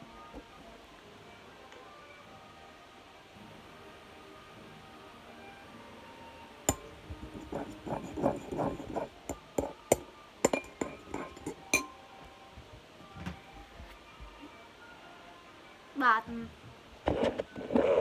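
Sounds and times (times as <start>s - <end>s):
scraping and stirring: 6.7s - 11.9s
utensil clinking against container: 6.7s - 12.0s.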